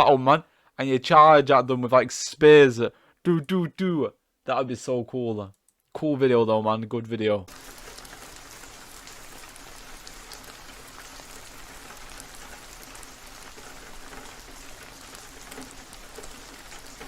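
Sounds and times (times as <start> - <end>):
steady hiss with ticks: 7.5 - 17.0.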